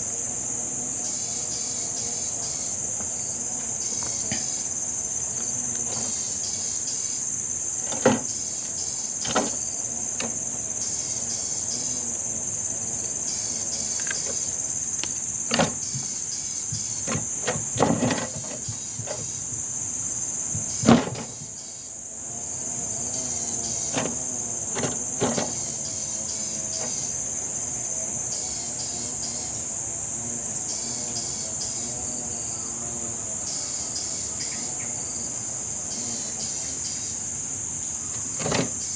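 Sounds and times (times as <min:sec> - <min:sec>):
insect chorus drone: 0:00.0 - 0:38.9
sharp clicks and knocks: 0:05.4 - 0:06.4, 0:07.8 - 0:10.6, 0:13.8 - 0:19.6, 0:20.5 - 0:21.6, 0:23.8 - 0:25.7, 0:38.1 - 0:38.9.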